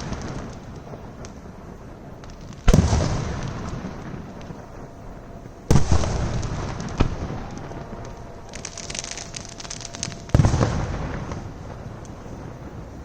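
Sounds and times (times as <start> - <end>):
firework crackling: 0.0 - 13.0
fireworks booming: 0.0 - 13.0
sharp firework bang: 2.7 - 3.6, 5.7 - 7.2.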